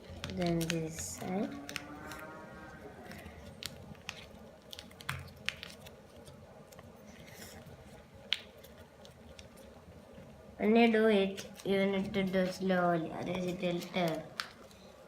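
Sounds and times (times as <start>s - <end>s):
paper crinkling as folded: 0.0s - 10.3s.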